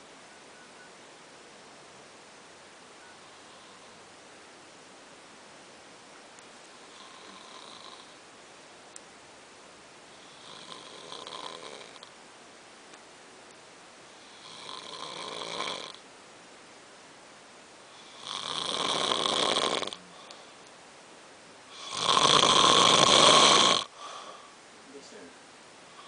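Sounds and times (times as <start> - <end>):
heavy rasping snoring: 6.8 - 8.2, 10.2 - 12.1, 14.2 - 16.0, 17.9 - 20.4, 21.7 - 24.4.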